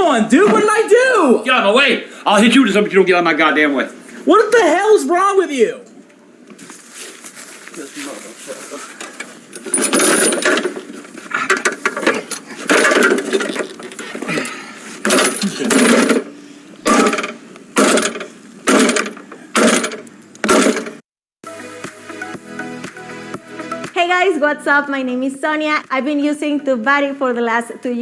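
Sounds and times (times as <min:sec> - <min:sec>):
metal clattering and banging: 0:09.0 - 0:16.3, 0:16.9 - 0:21.0
heavy ringing strikes on metal: 0:16.9 - 0:20.9.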